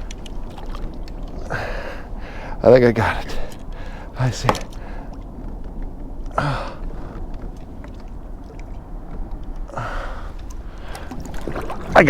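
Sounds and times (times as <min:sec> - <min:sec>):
faint clicks and rustles: 0:00.0 - 0:12.0
steady low rumble: 0:00.0 - 0:12.0
man straining and breathing: 0:01.3 - 0:05.2, 0:06.3 - 0:07.8, 0:09.6 - 0:11.2.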